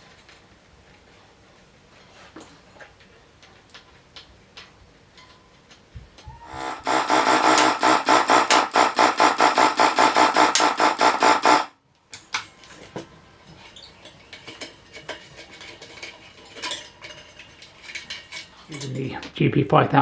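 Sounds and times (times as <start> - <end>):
bicycle wheel clicking and rubbing: 5.8 - 11.7.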